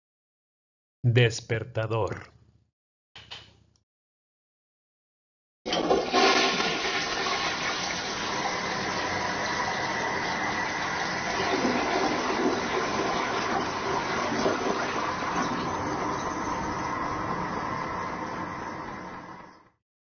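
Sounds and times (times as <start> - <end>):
toilet flushing: 5.7 - 19.8.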